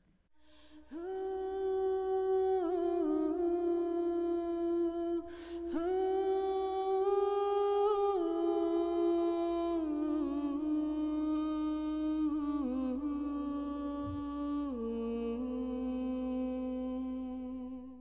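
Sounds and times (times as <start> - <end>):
breath: 0.3 - 0.9, 5.2 - 5.7.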